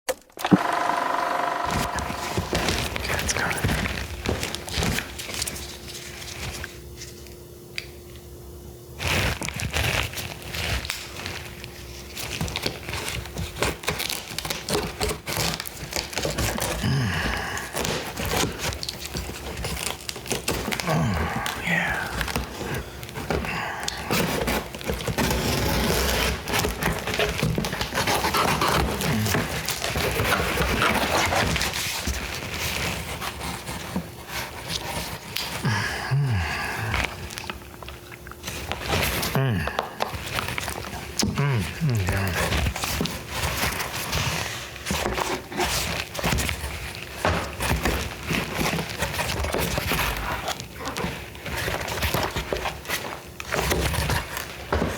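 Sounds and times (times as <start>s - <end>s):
man grunting and breathing heavily: 1.7s - 4.4s, 16.6s - 18.2s, 20.7s - 24.7s, 28.4s - 29.7s, 35.6s - 37.4s, 39.0s - 40.2s, 41.2s - 42.8s
packaging crinkling and rustling: 1.7s - 8.1s, 9.0s - 35.6s, 36.3s - 54.9s
low vocal noise: 1.8s - 4.0s, 16.8s - 18.0s, 20.8s - 24.4s, 28.8s - 29.7s, 35.6s - 37.4s, 38.9s - 40.0s, 41.2s - 42.8s.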